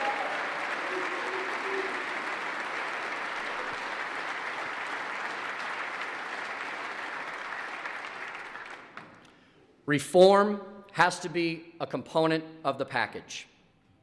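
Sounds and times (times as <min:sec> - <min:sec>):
people applauding: 0:00.0 - 0:09.2.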